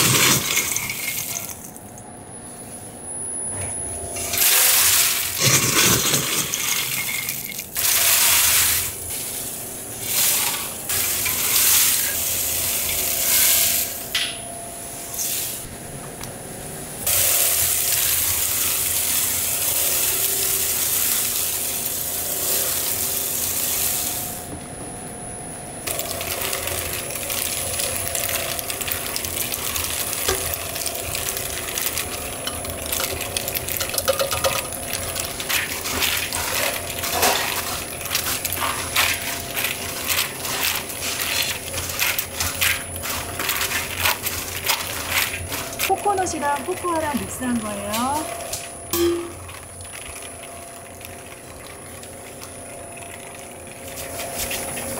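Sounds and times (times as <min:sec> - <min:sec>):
snack pieces clattering on metal: 0:00.0 - 0:01.8, 0:04.3 - 0:08.8, 0:31.9 - 0:34.8
machinery humming: 0:00.0 - 0:54.9.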